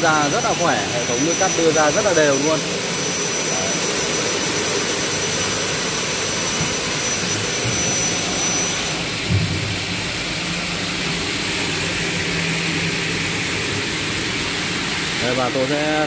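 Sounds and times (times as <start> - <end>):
cutting saw running: 0.0 - 16.0
low machine hum: 0.0 - 16.0.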